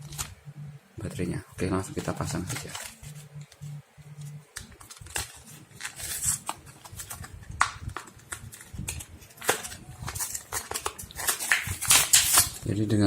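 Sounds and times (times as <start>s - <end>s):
plastic rustle: 2.0s - 3.3s, 4.6s - 12.8s.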